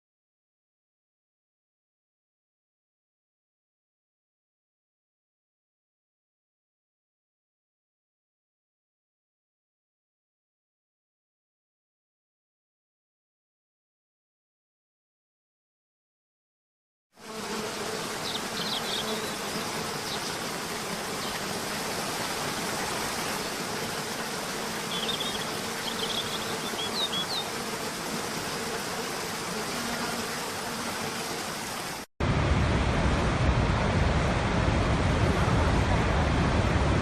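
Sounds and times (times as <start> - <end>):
buzzing hum: 17.2 - 37.0
deep rushing noise: 32.2 - 37.0.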